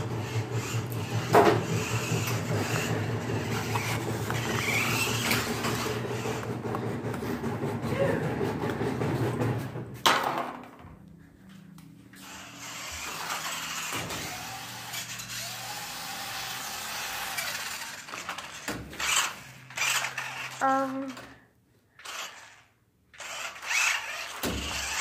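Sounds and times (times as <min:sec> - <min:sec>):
toy car motor whirring: 0:00.0 - 0:07.1, 0:12.2 - 0:25.0.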